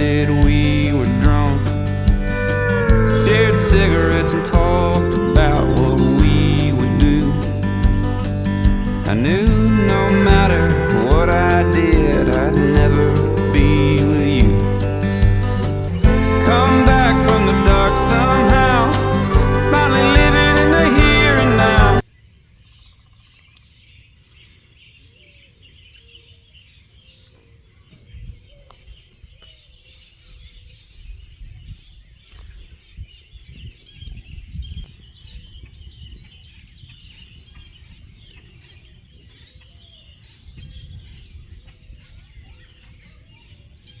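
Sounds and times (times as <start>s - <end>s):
country song with guitar: 0.0s - 22.0s
low rumble: 0.0s - 22.0s
birds chirping: 0.0s - 44.0s.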